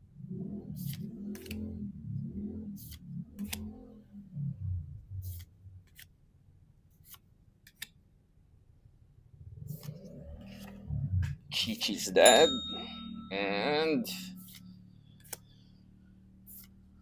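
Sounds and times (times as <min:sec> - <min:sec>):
low handling rumble: 0:00.0 - 0:05.9, 0:09.2 - 0:11.6
trading cards snapping and sliding: 0:00.8 - 0:01.6, 0:02.8 - 0:03.7, 0:06.9 - 0:08.0, 0:16.5 - 0:16.8.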